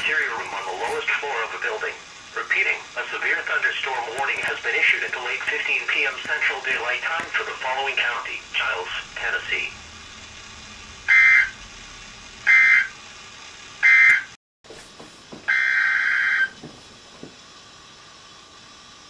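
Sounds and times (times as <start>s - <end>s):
buzzy digital data bursts: 0.0s - 14.3s
faint steady hiss: 0.0s - 19.0s.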